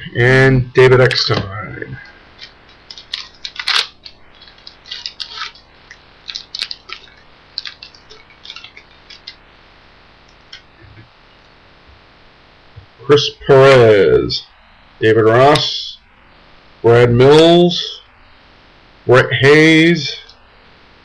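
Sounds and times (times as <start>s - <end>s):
wrapper tearing and crinkling: 2.4s - 9.4s.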